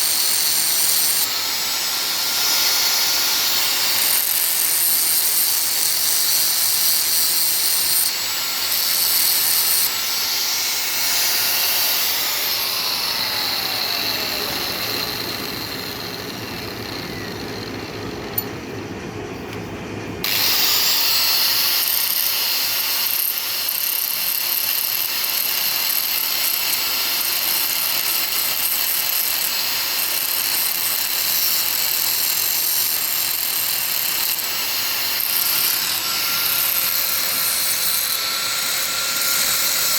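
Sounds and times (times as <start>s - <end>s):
machine motor whining: 0.1s - 18.6s.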